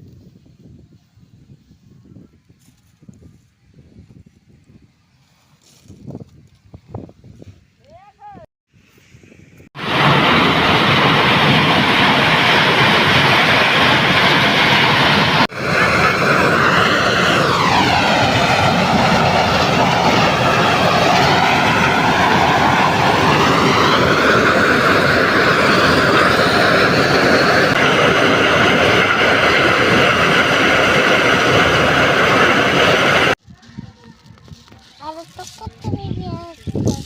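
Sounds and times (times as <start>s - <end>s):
loud engine-driven machine running: 9.8s - 33.4s.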